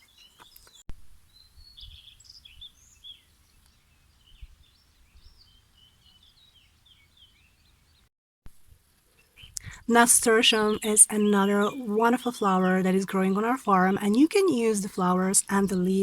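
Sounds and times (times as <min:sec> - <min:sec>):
small birds chirping: 0:00.0 - 0:08.1, 0:09.0 - 0:16.0.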